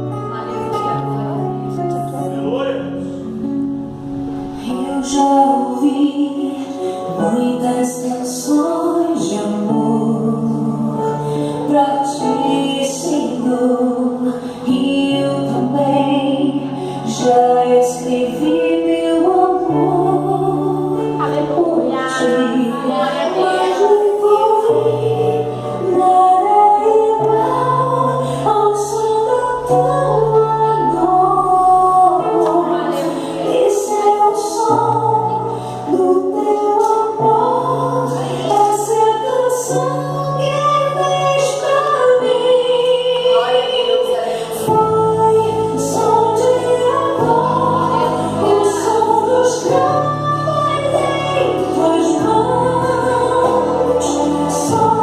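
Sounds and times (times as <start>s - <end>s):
choir singing: 4.1s - 55.0s
woman singing lead: 4.4s - 55.0s
bass line: 23.3s - 35.4s.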